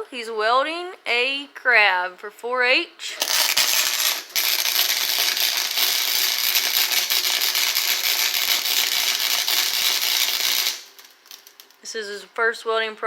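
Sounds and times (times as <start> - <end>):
arc welder crackling: 3.1 - 11.9.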